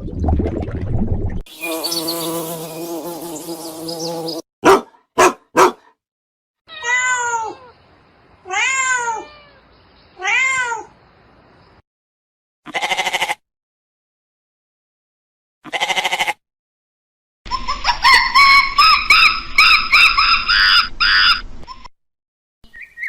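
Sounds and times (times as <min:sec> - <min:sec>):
cat meowing: 0:06.7 - 0:07.7, 0:08.5 - 0:10.9.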